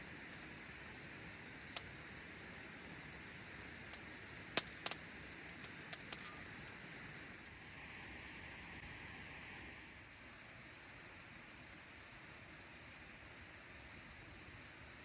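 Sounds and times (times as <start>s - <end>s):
campfire crackling and popping: 0.0s - 7.6s.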